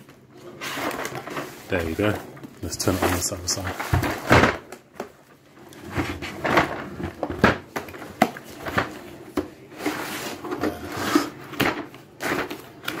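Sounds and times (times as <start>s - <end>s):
packaging rustling: 0.0s - 13.0s.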